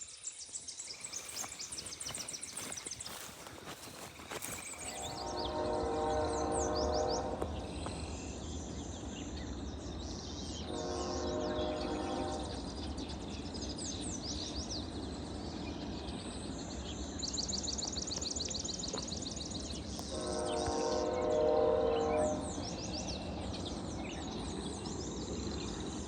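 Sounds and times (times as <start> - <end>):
songbirds chirping and singing: 0.8 - 16.1
distant horn tone: 1.4 - 8.0, 10.7 - 12.6, 20.1 - 22.6.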